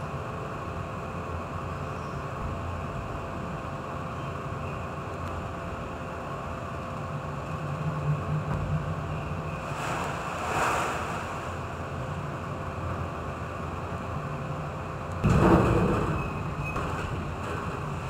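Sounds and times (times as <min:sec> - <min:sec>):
steady low hum: 0:00.0 - 0:18.0
wind: 0:00.0 - 0:18.0
high waves at sea: 0:08.7 - 0:14.2.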